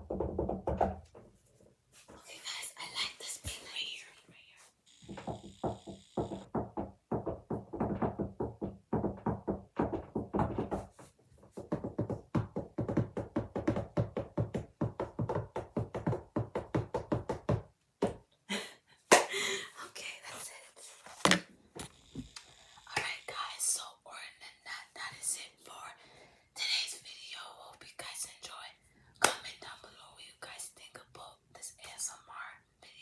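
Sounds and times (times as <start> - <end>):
finger tapping on hard surface: 5.1 - 10.9.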